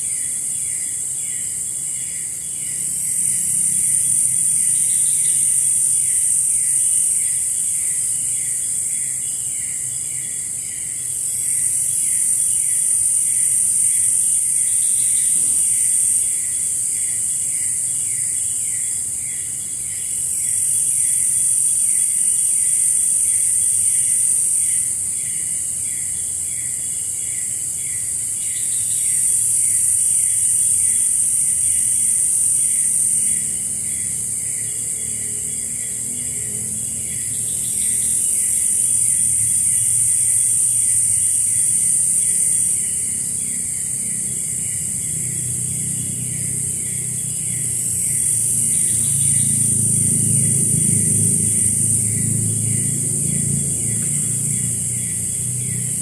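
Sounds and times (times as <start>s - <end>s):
rapid insect chirping: 0.0s - 56.0s
shrill insect drone: 0.0s - 56.0s.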